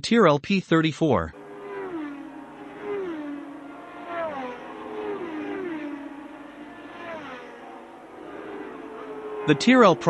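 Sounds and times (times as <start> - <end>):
racing cars passing by: 1.3 - 10.0.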